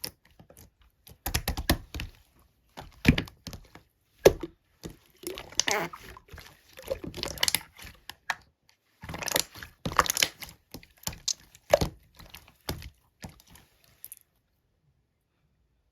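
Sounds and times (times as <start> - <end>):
slime squeezed by hand crackling: 5.4 - 6.2.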